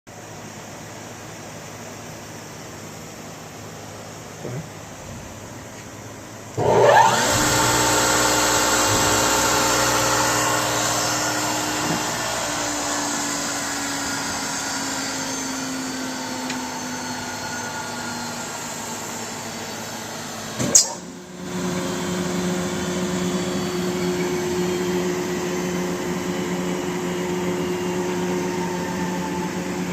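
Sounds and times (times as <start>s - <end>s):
grinder motors whining and humming: 4.4s - 29.9s.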